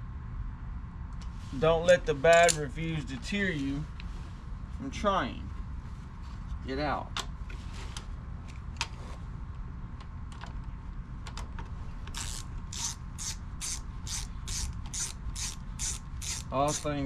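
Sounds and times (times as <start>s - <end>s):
ratchet wrench clicking: 12.1s - 17.0s.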